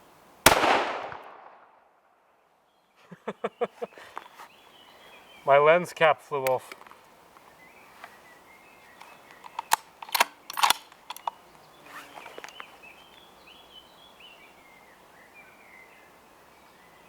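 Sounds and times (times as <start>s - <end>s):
faint bird chirping: 2.6s - 5.8s, 7.4s - 17.0s
metallic clicks and knocks: 9.4s - 11.3s.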